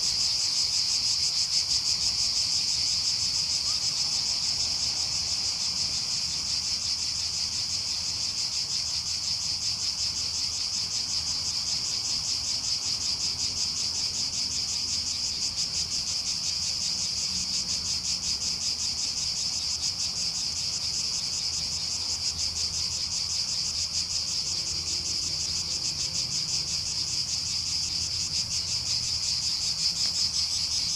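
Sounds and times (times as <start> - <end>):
cicadas buzzing: 0.0 - 30.9.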